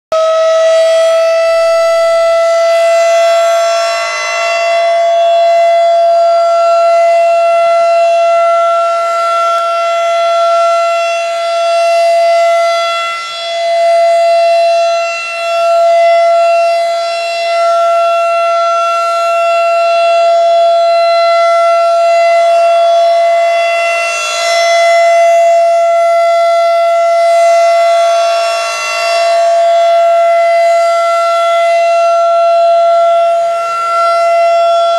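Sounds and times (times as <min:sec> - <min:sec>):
warning siren steady tone: 0:00.1 - 0:34.9.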